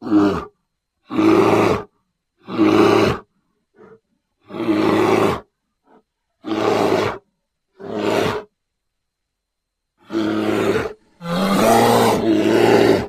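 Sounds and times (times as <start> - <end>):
creature roars: 10.1 - 13.0.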